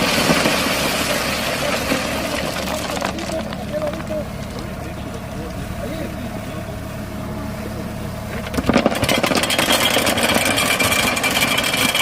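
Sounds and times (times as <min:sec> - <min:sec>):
construction machine engine: 0:00.0 - 0:12.0
rattling clatter: 0:08.4 - 0:12.0.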